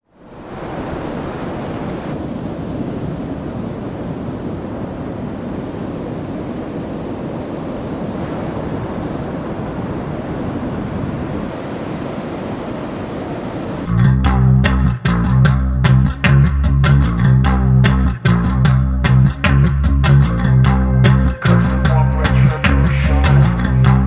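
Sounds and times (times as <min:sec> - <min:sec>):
ocean waves breaking: 0:00.1 - 0:13.9
wind noise on microphone: 0:00.2 - 0:14.3.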